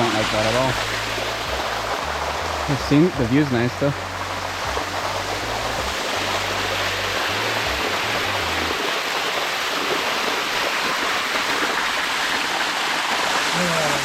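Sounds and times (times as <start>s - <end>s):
low bass tones: 0.0s - 8.9s
water rushing over rock: 0.0s - 14.0s.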